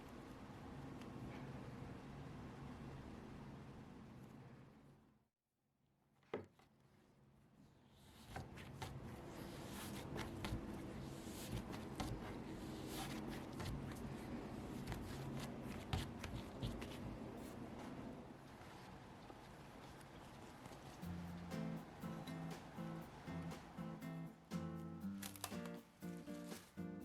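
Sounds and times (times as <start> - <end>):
hands kneading dough: 8.0 - 21.6.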